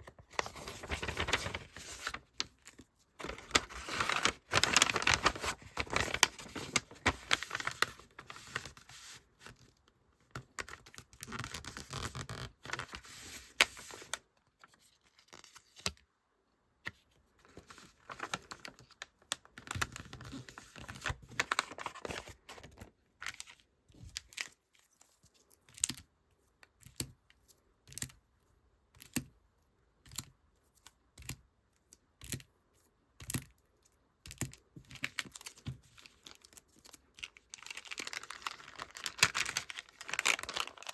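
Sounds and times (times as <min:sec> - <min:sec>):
packaging crinkling and rustling: 0:00.0 - 0:08.8, 0:17.6 - 0:22.9, 0:34.9 - 0:40.9.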